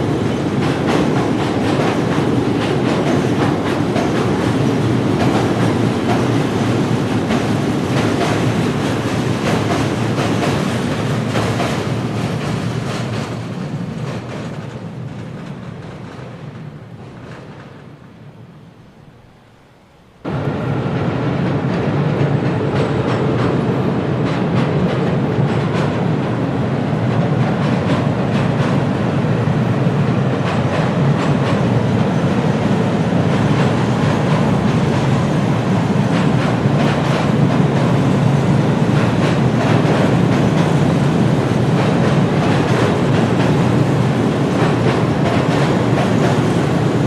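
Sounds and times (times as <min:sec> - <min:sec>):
wheels clicking over rail joints: 0:00.0 - 0:18.0, 0:30.3 - 0:47.0
train rumbling on track: 0:00.0 - 0:47.0.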